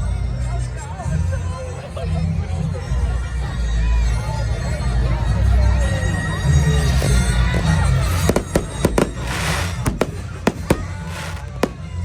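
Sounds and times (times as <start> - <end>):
hissing crackling firework showers: 7.3 - 12.0
fireworks bangs: 7.6 - 12.0.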